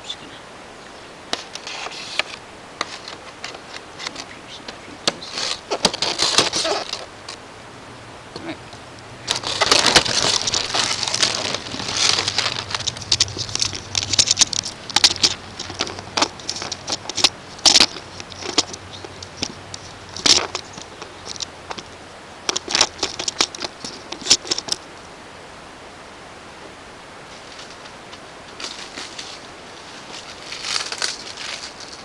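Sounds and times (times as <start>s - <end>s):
packaging crinkling and rustling: 5.2s - 7.4s, 9.2s - 21.8s, 28.6s - 32.0s.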